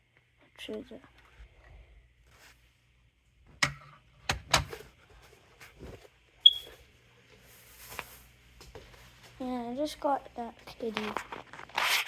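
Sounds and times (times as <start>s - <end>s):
smoke alarm beep: 6.4s - 6.7s.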